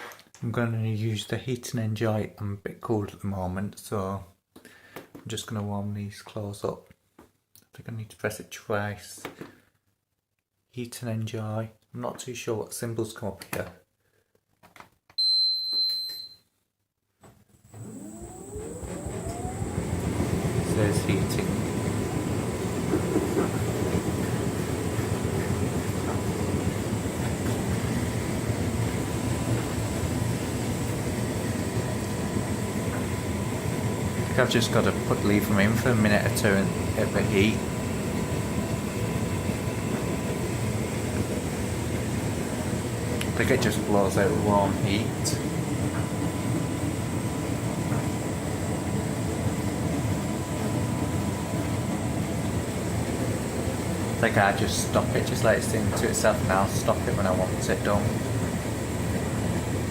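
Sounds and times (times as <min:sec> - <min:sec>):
tumble dryer running: 0:17.7 - 0:59.9.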